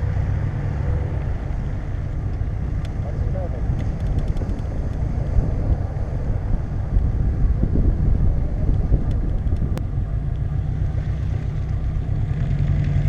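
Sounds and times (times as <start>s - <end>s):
vehicle engine rumbling off-road: 0.0s - 13.0s.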